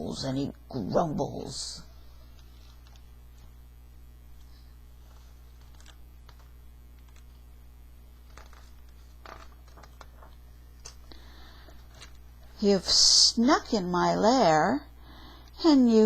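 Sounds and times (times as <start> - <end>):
low electrical hum: 0.0 - 16.0
soft rustles: 8.2 - 12.6.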